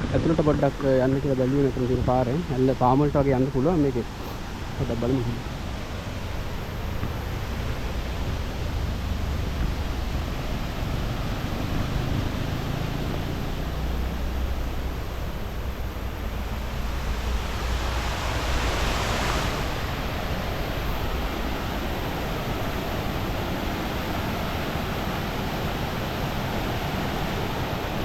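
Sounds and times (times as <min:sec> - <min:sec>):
waterfall roaring: 0:00.0 - 0:28.0
deep rumble: 0:13.2 - 0:22.7.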